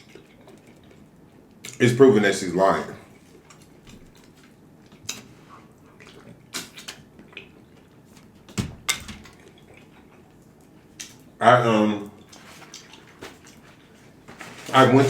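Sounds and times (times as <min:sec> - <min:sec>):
wet mouth clicks eating: 0:05.9 - 0:08.0.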